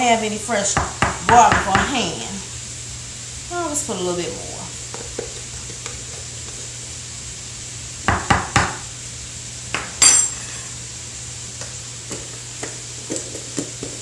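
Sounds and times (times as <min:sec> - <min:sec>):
ringing clink: 0:10.0 - 0:10.6.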